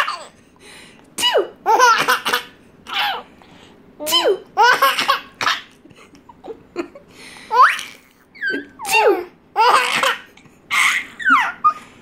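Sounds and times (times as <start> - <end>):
baby laughing: 0.0 - 0.4, 1.6 - 3.3, 4.6 - 6.8, 7.5 - 12.0.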